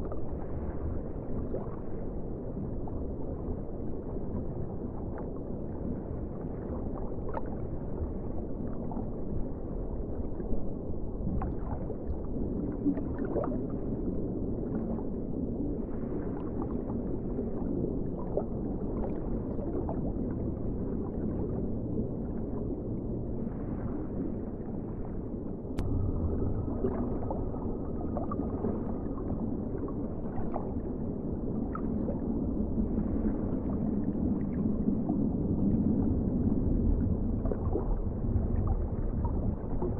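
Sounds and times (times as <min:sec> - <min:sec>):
muffled underwater rumble: 0:00.0 - 0:39.9
bubble pops and gurgles: 0:25.8 - 0:31.0, 0:37.0 - 0:39.9.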